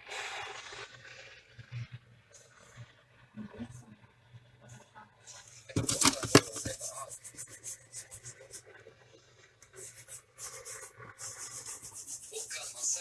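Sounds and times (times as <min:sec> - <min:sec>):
quick scratchy strokes: 0:05.8 - 0:08.8, 0:09.7 - 0:13.0.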